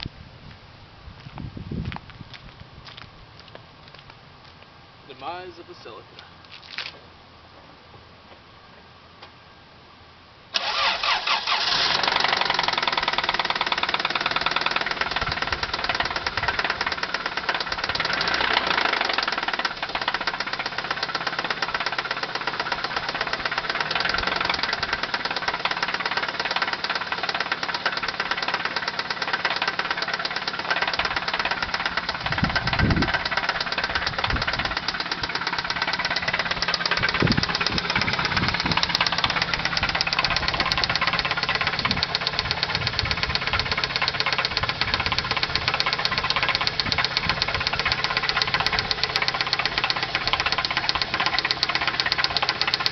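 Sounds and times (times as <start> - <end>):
car engine knocking: 12.0 - 52.9.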